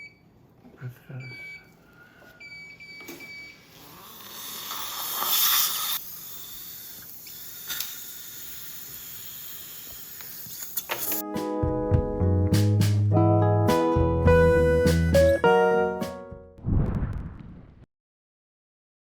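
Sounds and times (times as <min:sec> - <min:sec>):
dental suction hissing: 0:03.8 - 0:11.1.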